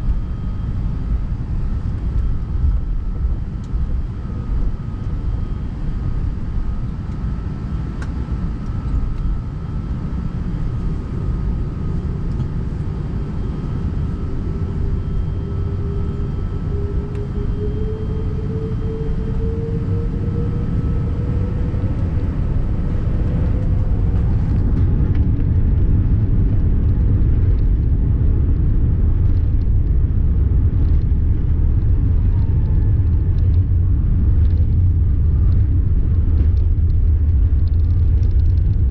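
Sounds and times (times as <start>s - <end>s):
jet engines spooling up: 0.0s - 25.6s
low cabin rumble: 0.0s - 38.9s.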